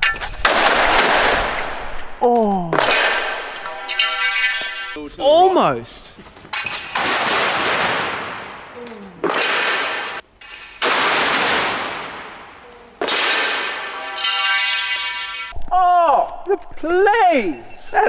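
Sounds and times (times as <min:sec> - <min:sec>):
balloons bursting with bangs: 0:00.0 - 0:05.0, 0:06.5 - 0:15.6.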